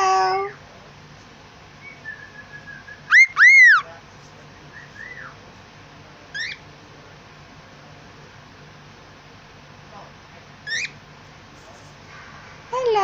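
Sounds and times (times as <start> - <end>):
pet bird whistling: 1.8 - 3.9, 4.7 - 5.4, 6.3 - 6.7, 10.6 - 11.0.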